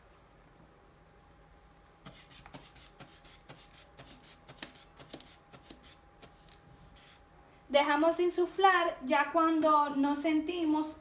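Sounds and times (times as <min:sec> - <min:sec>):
inflation bulb squeaking and clicking: 0:02.3 - 0:06.0.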